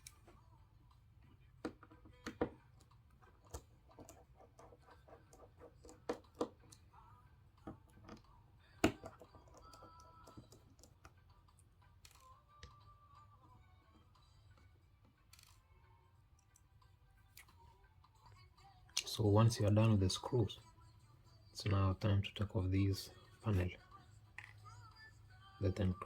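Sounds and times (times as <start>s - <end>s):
screwdriver clicks and taps: 5.8s - 6.8s.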